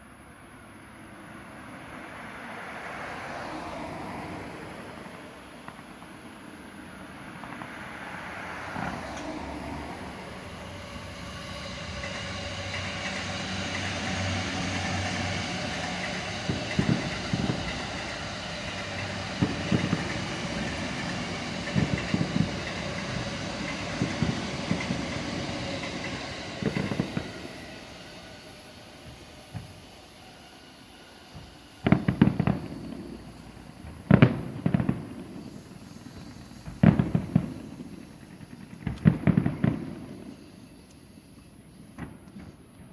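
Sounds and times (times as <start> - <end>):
train passing: 0.0 - 42.9
train wheels clicking over rail joints: 7.4 - 41.5.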